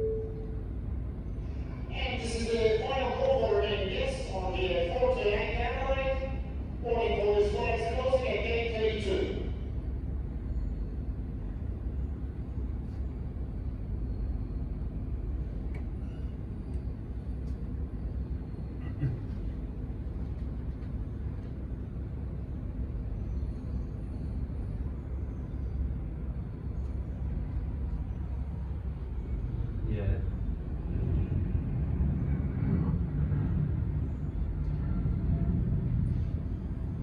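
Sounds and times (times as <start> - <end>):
distant airport and traffic rumble: 0.0 - 37.0
faint clicks: 15.7 - 15.9.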